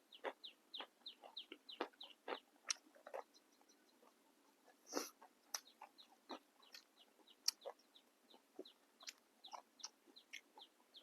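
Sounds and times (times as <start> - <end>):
chewing crisp vegetables: 0.0 - 11.0
mouth clicks: 4.9 - 10.7.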